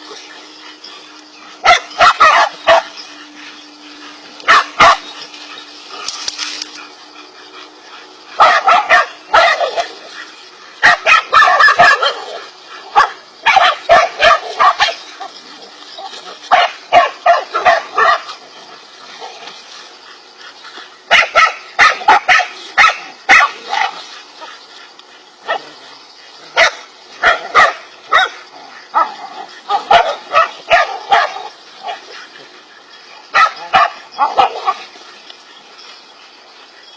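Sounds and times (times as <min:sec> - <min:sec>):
dogs barking sharply: 0:01.6 - 0:03.1, 0:04.4 - 0:05.2, 0:08.4 - 0:10.0, 0:10.8 - 0:15.1, 0:16.4 - 0:18.4, 0:21.1 - 0:24.0, 0:26.5 - 0:32.0, 0:33.3 - 0:34.8.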